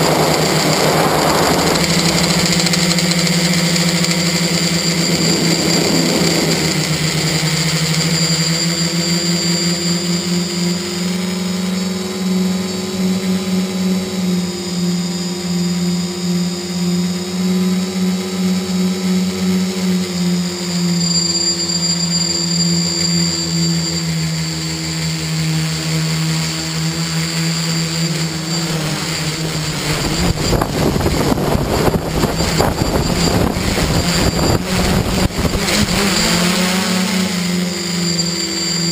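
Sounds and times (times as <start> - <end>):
rough crackly rushing noise: 0.0 - 9.1
drone propellers buzzing: 0.0 - 38.9.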